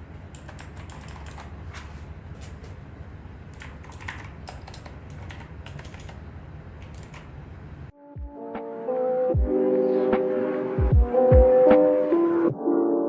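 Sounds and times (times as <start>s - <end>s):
steady low hum: 0.0s - 7.9s
mechanical keyboard key clacks: 0.3s - 1.6s, 3.5s - 6.2s, 6.8s - 7.4s.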